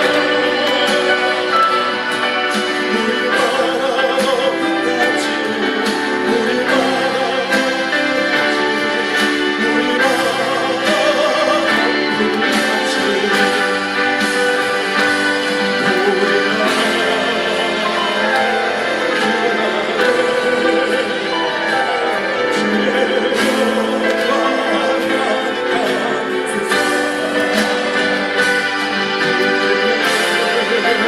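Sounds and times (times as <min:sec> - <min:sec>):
worship song music: 0:00.0 - 0:31.0.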